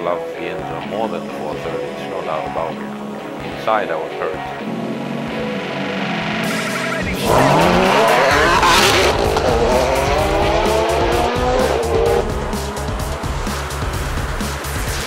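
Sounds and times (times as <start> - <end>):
background music: 0.0 - 15.0
sports car engine accelerating: 4.6 - 15.0.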